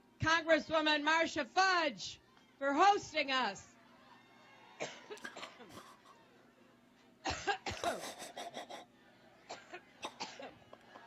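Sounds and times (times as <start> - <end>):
woman coughing: 4.8 - 5.9, 7.2 - 8.8, 9.5 - 10.6.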